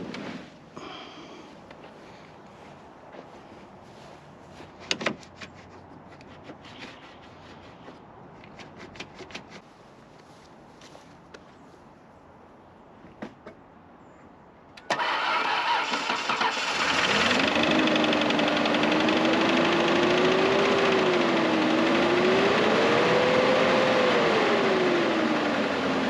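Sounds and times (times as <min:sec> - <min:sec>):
starter motor cranking: 0:14.9 - 0:23.4
misfiring engine running: 0:15.0 - 0:26.0.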